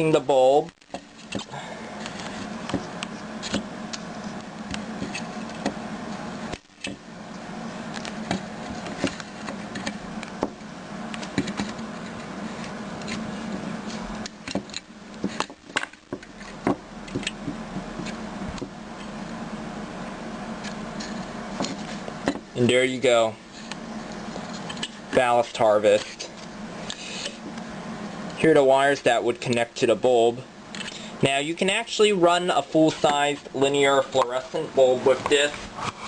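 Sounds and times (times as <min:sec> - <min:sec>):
steady hum and hiss: 0:00.0 - 0:36.0.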